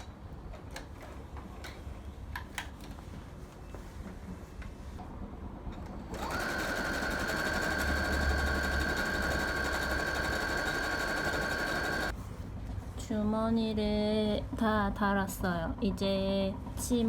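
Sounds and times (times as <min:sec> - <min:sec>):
sewing machine running: 0:06.1 - 0:12.1.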